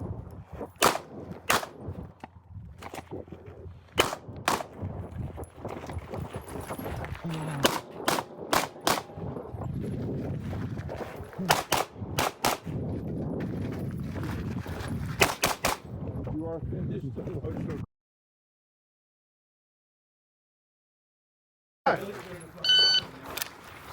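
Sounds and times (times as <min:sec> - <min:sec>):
pistol shots: 0:00.8 - 0:01.9, 0:04.0 - 0:04.8, 0:07.6 - 0:09.2, 0:11.4 - 0:12.8, 0:15.2 - 0:15.9.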